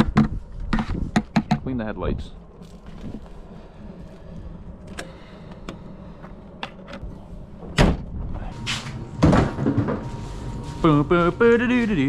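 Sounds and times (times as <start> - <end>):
low steady hum: 0.0 - 12.0
door slamming shut: 7.8 - 8.1, 8.8 - 10.0.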